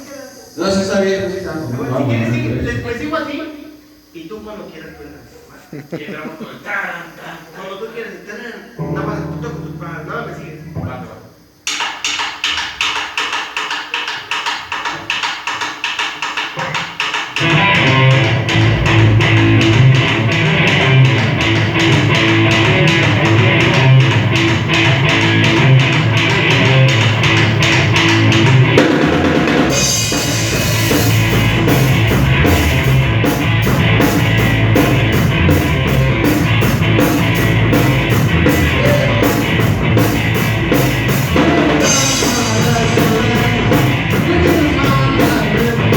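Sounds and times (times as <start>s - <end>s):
bass guitar: 8.8s - 11.2s, 17.4s - 45.9s
electric guitar: 8.8s - 11.6s, 16.6s - 45.9s
drums: 8.8s - 45.9s.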